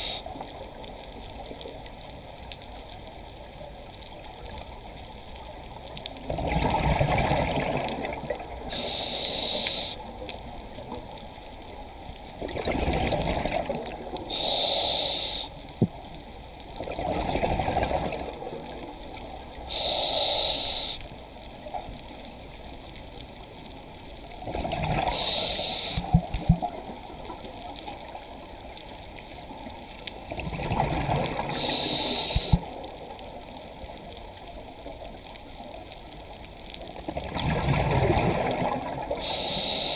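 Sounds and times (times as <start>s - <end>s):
regulator hiss: 0.0s - 0.4s, 8.6s - 10.2s, 14.2s - 15.9s, 19.6s - 21.2s, 25.0s - 26.7s, 31.5s - 33.2s, 39.1s - 39.9s
exhaled bubbles rushing: 6.3s - 8.7s, 12.4s - 14.3s, 16.8s - 18.7s, 24.4s - 25.2s, 30.2s - 31.6s, 37.1s - 39.2s.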